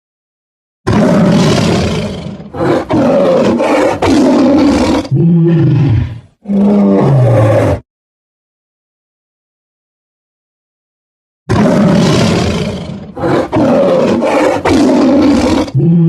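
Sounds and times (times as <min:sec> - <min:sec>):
tiger roaring and growling: 0:00.9 - 0:07.8, 0:11.5 - 0:16.0.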